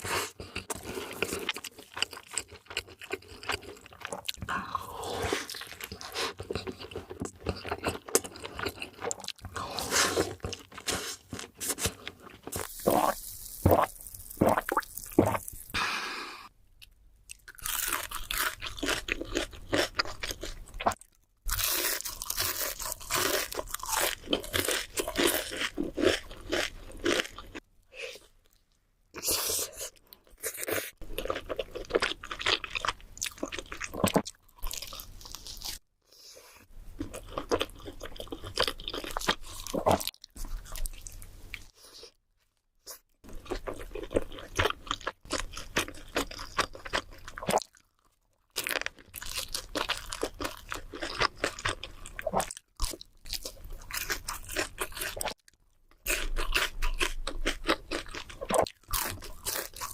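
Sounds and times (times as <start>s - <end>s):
crunchy chewing: 17.3s - 27.6s, 43.4s - 59.9s.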